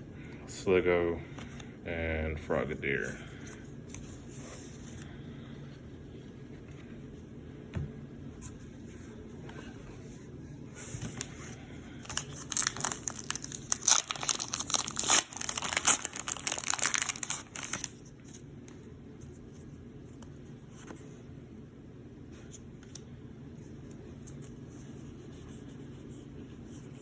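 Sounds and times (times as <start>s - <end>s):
card pack packaging tearing: 12.0s - 18.0s.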